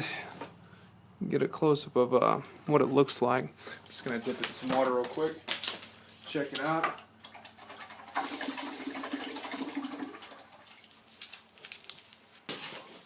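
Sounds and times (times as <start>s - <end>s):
sizzling and bubbling water: 7.3s - 11.0s
hot metal hissing in water: 8.1s - 9.3s.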